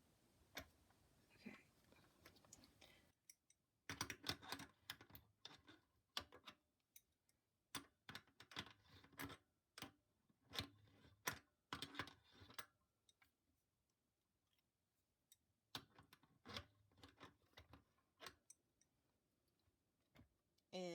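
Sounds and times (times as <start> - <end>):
small parts clicking and knocking: 2.0 - 12.8.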